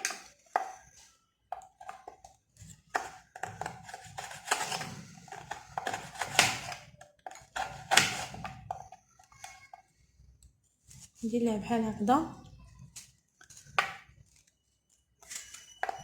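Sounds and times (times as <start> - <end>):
utensils and dishes clinking: 15.2 - 16.0.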